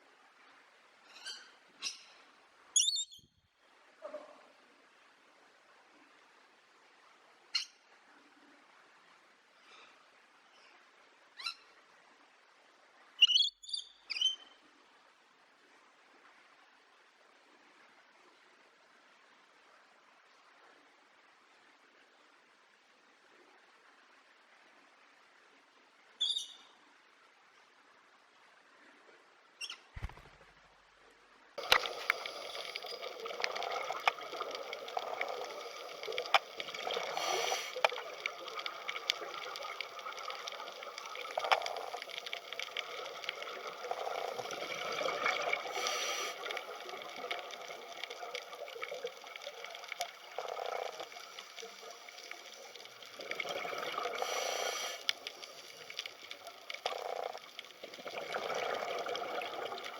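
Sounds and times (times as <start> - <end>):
water running and splashing: 31.6 - 59.9.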